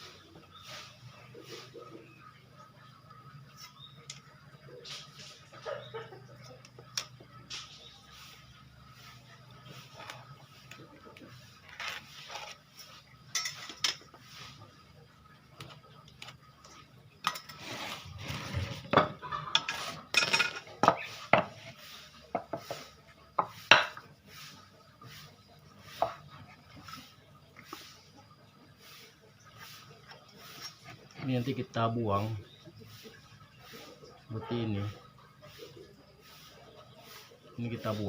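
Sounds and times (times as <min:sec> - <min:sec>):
scraping: 0:17.3 - 0:21.8.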